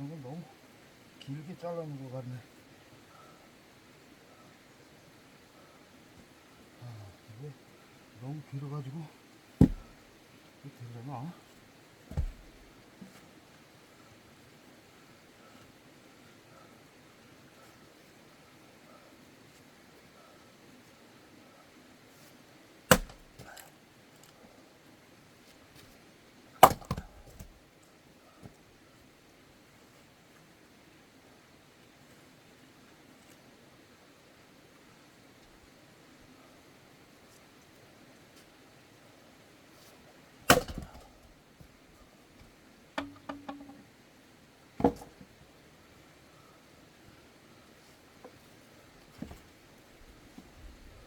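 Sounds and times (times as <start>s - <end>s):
axe striking log: 9.6s - 10.0s, 12.1s - 12.7s, 22.9s - 23.6s, 26.6s - 27.5s, 40.5s - 41.1s, 43.0s - 43.8s, 44.8s - 45.2s
wood knocks: 9.6s - 10.0s, 12.1s - 12.6s, 22.9s - 23.5s, 26.6s - 27.5s, 40.5s - 41.1s, 43.0s - 43.8s, 44.8s - 45.3s
wooden knocks: 9.6s - 10.0s, 12.1s - 12.6s, 43.0s - 43.8s.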